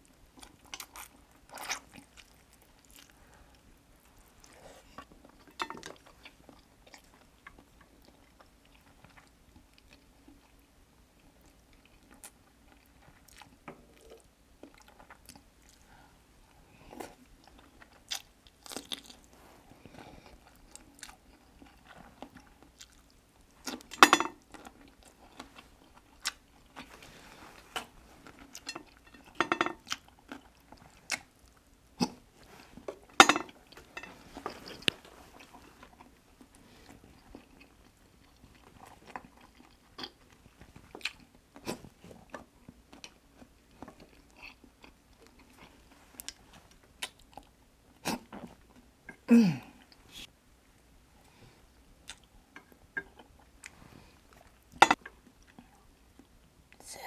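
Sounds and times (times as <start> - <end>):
person chewing: 0.4 - 3.6, 11.4 - 15.8, 17.0 - 49.2, 52.0 - 56.3.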